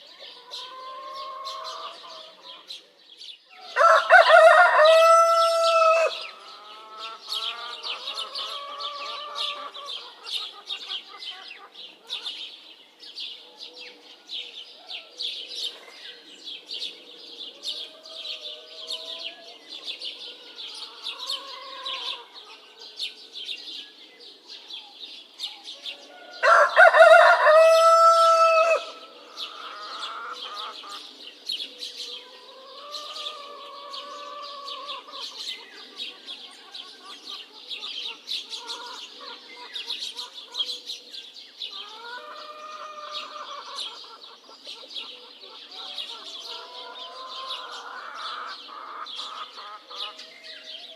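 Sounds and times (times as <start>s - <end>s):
small birds chirping: 0.0s - 50.9s
rooster crowing: 3.6s - 7.1s, 26.0s - 30.4s.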